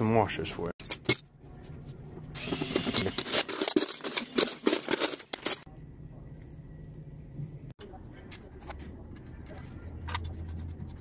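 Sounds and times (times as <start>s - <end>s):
bolts and washers rattling: 0.8s - 1.4s, 2.5s - 5.7s.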